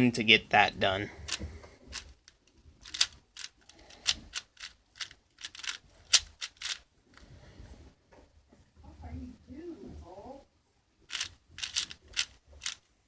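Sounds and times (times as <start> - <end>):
puzzle cube plastic clicks: 1.2 - 6.9, 11.0 - 12.9.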